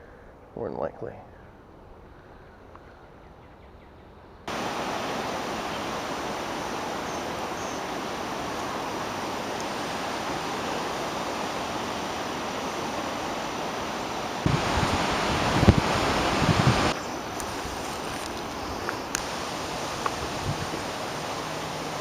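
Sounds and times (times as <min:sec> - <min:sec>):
stream water rushing: 0:04.5 - 0:22.0.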